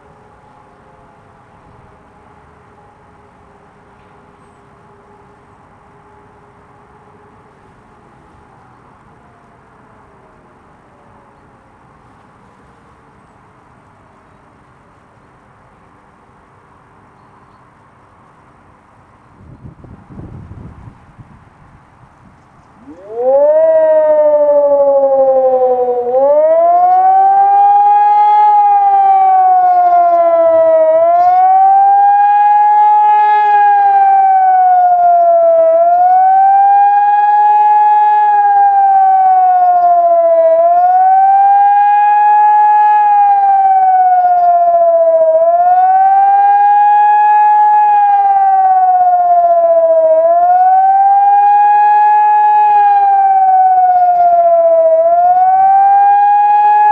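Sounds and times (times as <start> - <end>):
wailing siren: 22.8 - 56.9.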